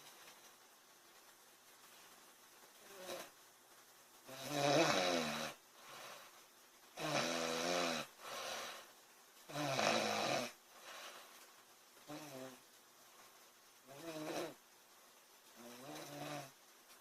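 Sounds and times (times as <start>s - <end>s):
woman snoring: 2.9s - 3.3s, 4.3s - 5.6s, 7.0s - 8.9s, 9.5s - 10.6s, 12.1s - 12.6s, 13.9s - 14.6s, 15.6s - 16.6s.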